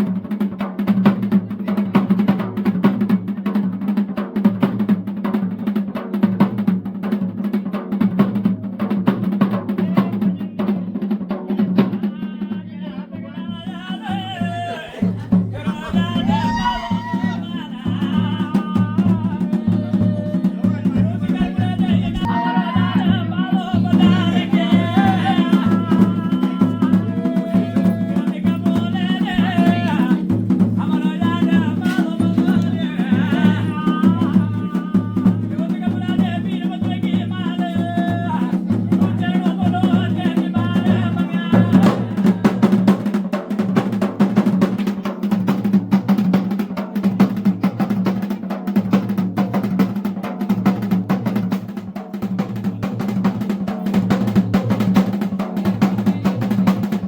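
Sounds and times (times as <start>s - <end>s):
steady drumbeat: 0.0s - 12.4s, 13.4s - 57.0s
person singing: 12.2s - 43.0s.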